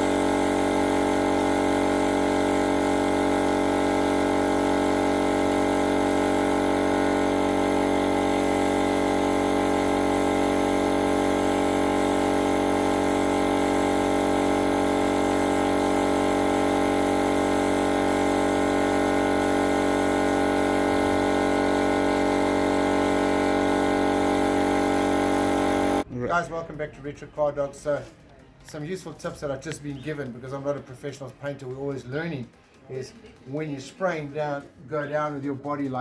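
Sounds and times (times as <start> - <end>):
air compressor running: 0.0 - 26.1.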